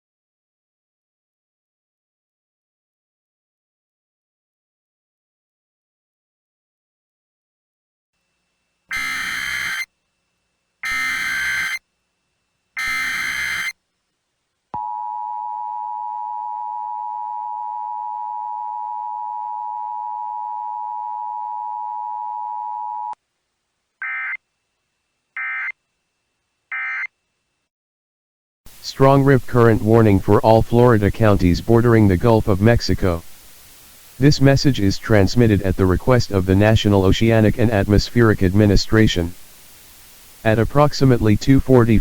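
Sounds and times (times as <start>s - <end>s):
screeching data bursts: 8.9s - 9.9s, 10.8s - 11.8s, 12.8s - 13.8s
two-tone attention signal: 8.9s - 9.9s, 10.8s - 11.8s, 12.8s - 13.8s.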